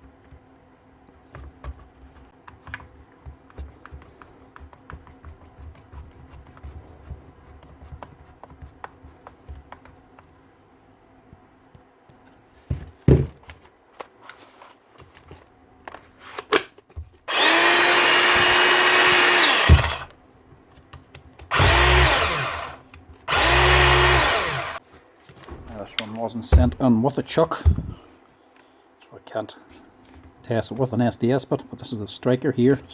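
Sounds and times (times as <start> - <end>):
cordless drill whining: 17.3 - 20.1, 21.5 - 24.8.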